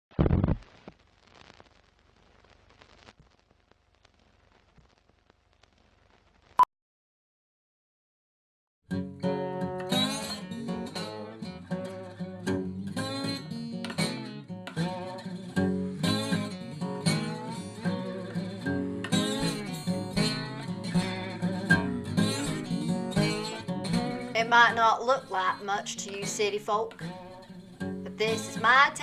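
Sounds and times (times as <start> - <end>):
acoustic guitar plucked and strummed: 8.9 - 29.0.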